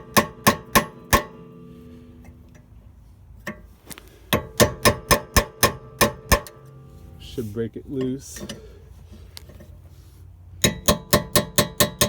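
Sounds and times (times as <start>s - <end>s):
hammer striking metal punch: 0.0s - 2.0s, 4.3s - 6.8s, 10.6s - 12.0s.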